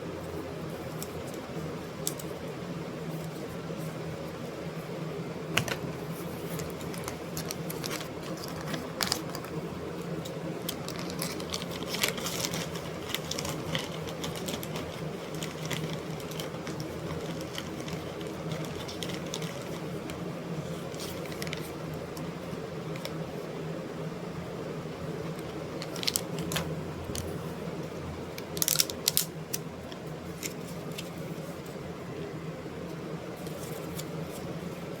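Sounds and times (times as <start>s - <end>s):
steady machine hum: 0.0s - 35.0s.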